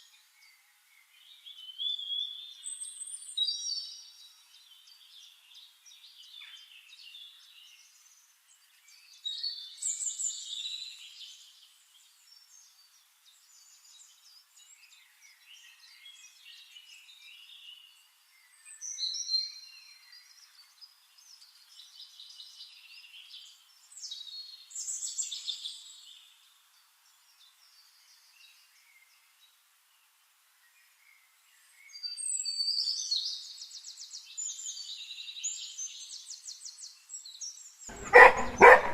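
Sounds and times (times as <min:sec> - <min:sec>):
birds chirping and trilling: 0:34.4 - 0:38.9.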